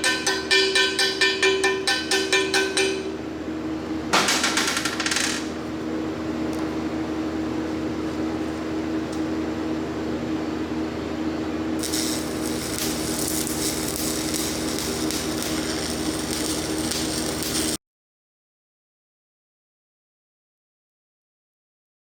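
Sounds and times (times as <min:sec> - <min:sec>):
welder hum: 0:11.6 - 0:17.8
welding arc crackle: 0:11.8 - 0:17.8.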